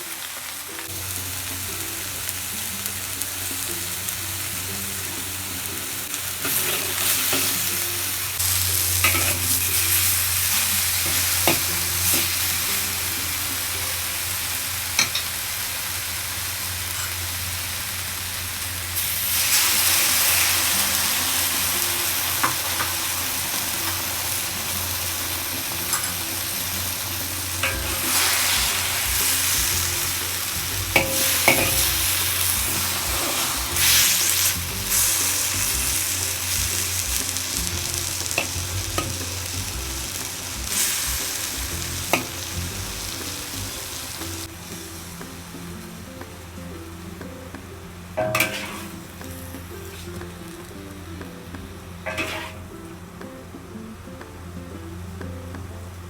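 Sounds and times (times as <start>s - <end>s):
food sizzling in a pan: 0.0s - 47.2s, 48.1s - 53.8s
utensil clinking on pan: 8.8s - 12.4s, 15.0s - 15.4s, 25.8s - 26.4s, 27.6s - 30.2s, 30.9s - 35.6s, 48.2s - 49.0s, 52.0s - 52.7s.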